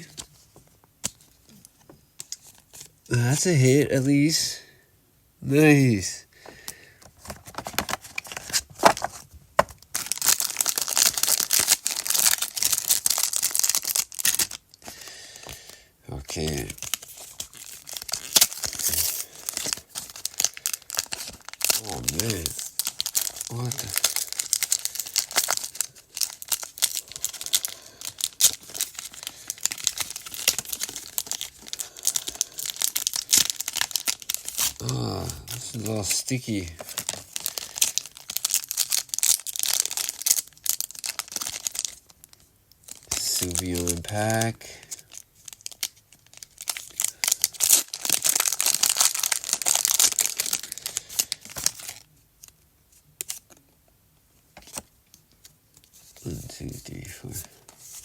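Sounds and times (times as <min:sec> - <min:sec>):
foil wrapper crinkling: 0:07.0 - 0:52.6, 0:53.2 - 0:53.6.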